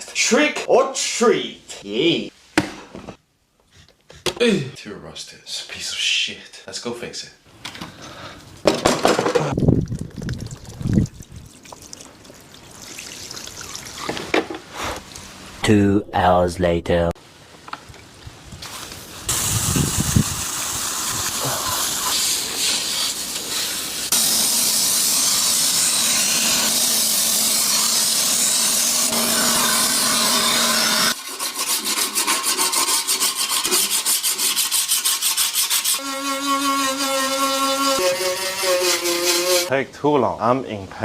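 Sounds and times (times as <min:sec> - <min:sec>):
blade sharpening rasp: 0:30.5 - 0:39.7.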